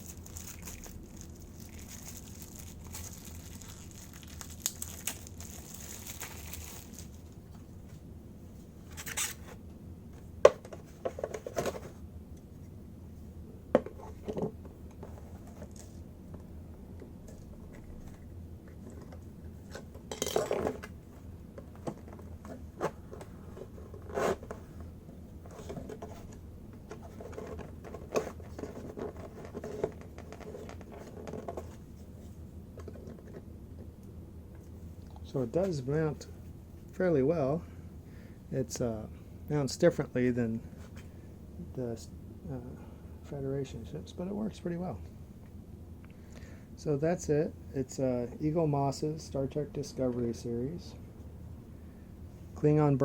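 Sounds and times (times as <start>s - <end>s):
scraping and rustling: 21.8s - 33.4s.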